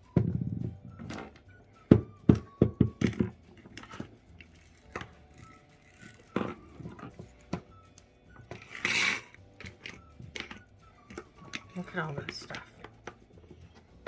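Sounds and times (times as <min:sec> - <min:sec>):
rubber balls knocking on hard surface: 0:00.0 - 0:05.3.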